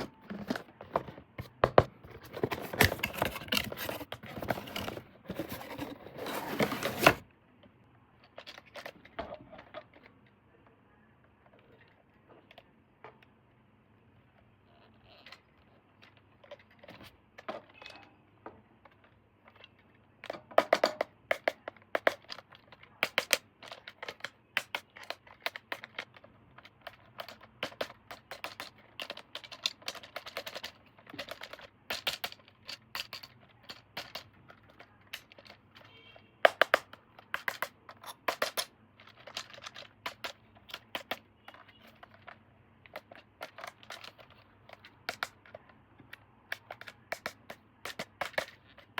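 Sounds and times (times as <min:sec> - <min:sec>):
clicks and taps: 0:35.1 - 0:48.9.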